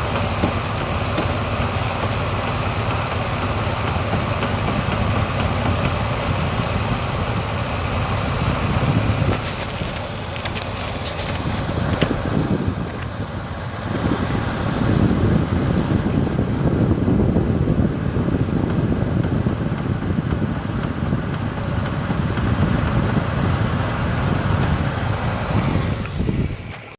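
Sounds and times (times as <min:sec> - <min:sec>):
car engine running: 0:00.0 - 0:26.9
wind noise: 0:00.0 - 0:26.9.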